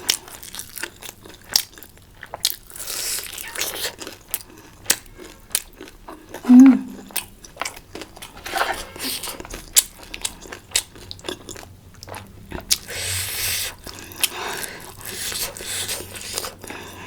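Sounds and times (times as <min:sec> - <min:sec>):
crunchy chewing: 0:00.0 - 0:17.0
low falling vocal sound: 0:06.5 - 0:07.1.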